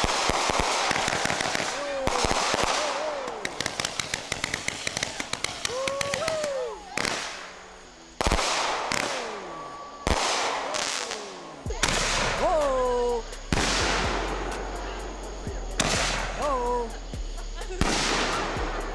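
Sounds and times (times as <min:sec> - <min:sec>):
fireworks crackling pops: 0:00.0 - 0:18.9
fireworks shell bursts: 0:00.0 - 0:18.9
person exclaiming: 0:05.6 - 0:07.0, 0:11.3 - 0:13.3, 0:16.4 - 0:17.8.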